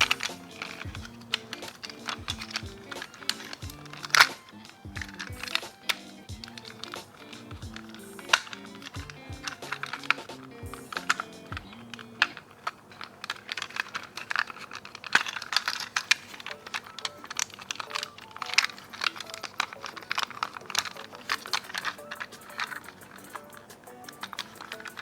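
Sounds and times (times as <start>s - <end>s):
soft background music: 0.0s - 13.8s, 15.1s - 25.0s
packaging crinkling: 0.0s - 25.0s
plastic clicks and taps: 0.0s - 25.0s.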